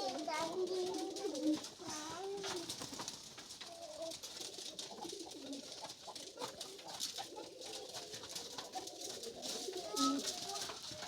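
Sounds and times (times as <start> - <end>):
pigeons cooing: 4.5 - 10.3.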